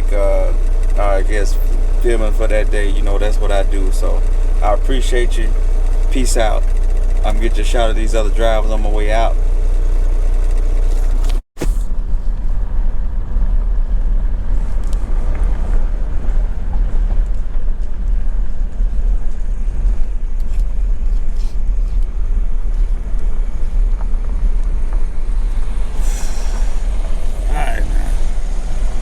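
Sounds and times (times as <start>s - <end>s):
truck engine rumble: 0.0s - 29.0s
brief hiss: 25.9s - 27.0s.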